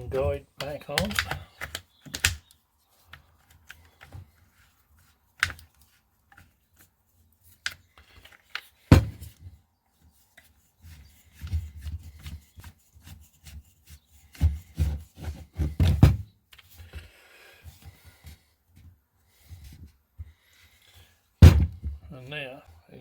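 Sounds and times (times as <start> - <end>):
plastic tool parts clicking and knocking: 0.6 - 4.3, 5.4 - 6.5, 7.6 - 9.4
heavy thump: 8.9 - 9.2, 21.4 - 22.1.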